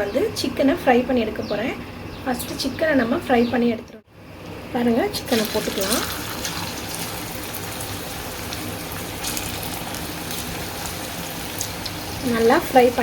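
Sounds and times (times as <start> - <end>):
oil spatters: 5.2 - 13.0
chicken sizzling in a pan: 5.3 - 13.0.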